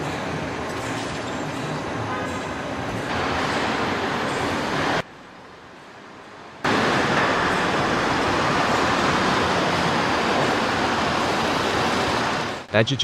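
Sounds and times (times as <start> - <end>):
steady rushing noise: 3.1 - 13.0.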